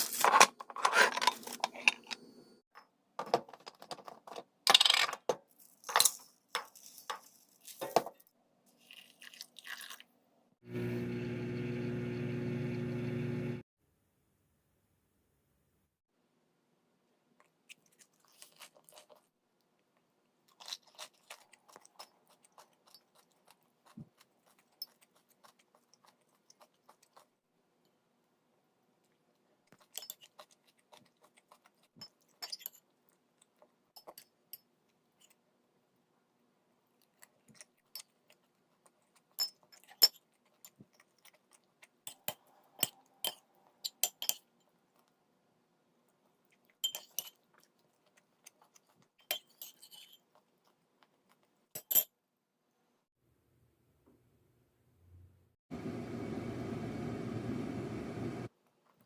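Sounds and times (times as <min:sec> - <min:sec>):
dishes and utensils clinking: 0:46.8 - 0:47.4.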